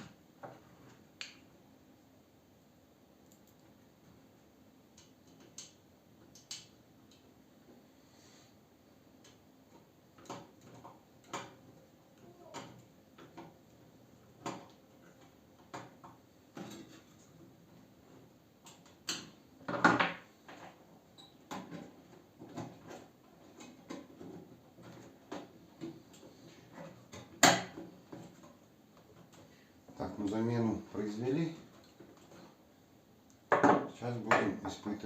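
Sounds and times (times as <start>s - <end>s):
clicks and knocks of tools: 4.9s - 7.3s, 9.2s - 11.6s.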